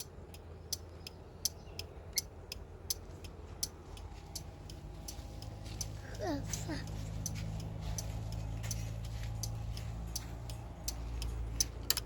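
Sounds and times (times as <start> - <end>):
sharp engine ticks: 0.0 - 12.0
scooter engine running: 3.4 - 12.0.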